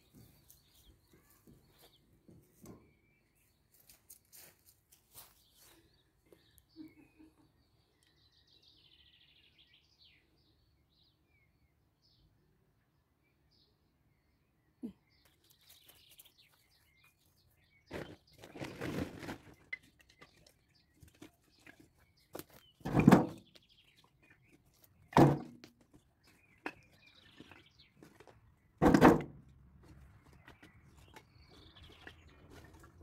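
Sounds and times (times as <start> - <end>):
wooden logs thunking: 22.3 - 23.6, 25.1 - 26.0, 26.7 - 33.0
birds chirping faintly: 29.8 - 33.0.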